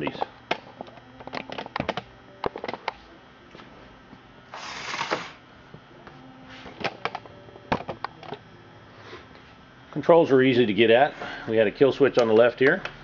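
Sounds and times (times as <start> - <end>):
clicks and knocks of handling: 0.0 - 3.0.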